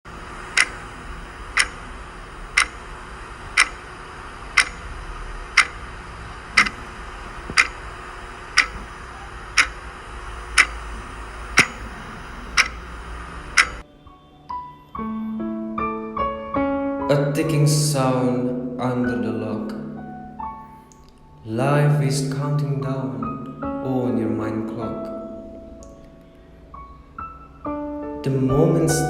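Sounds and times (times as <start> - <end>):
faint steady hiss: 0.1 - 16.0
clock ticking: 0.5 - 6.0, 6.6 - 6.9, 7.5 - 13.8.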